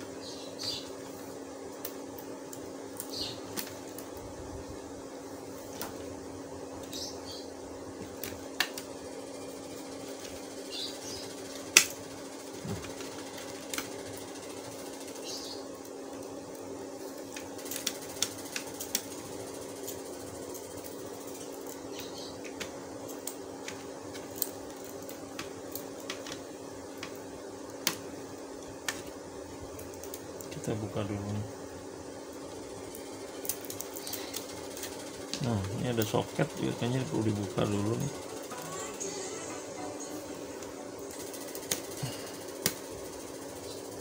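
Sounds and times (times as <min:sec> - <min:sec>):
steady hum: 0:00.0 - 0:44.0.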